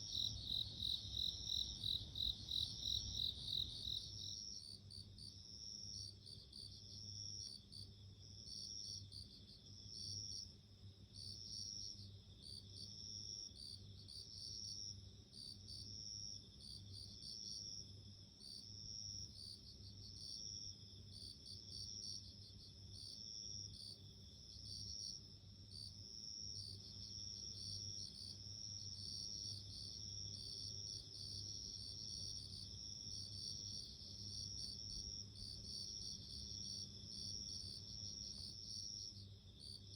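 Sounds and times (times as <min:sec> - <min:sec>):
crickets chirping: 0:00.0 - 0:05.0, 0:26.6 - 0:39.9.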